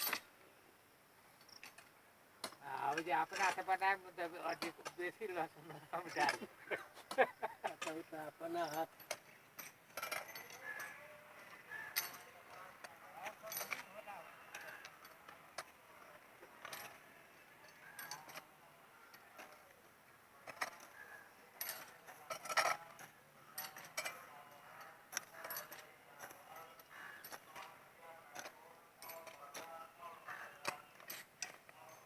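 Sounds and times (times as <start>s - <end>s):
faint background voices: 2.6s - 32.0s
light clicks and clinks: 4.5s - 19.8s, 20.4s - 29.8s, 30.4s - 32.0s.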